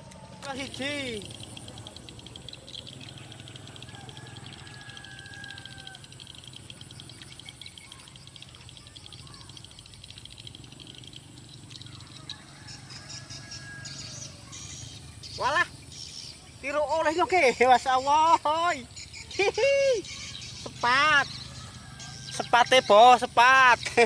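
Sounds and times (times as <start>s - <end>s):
high-pitched chirring: 0.0s - 24.0s.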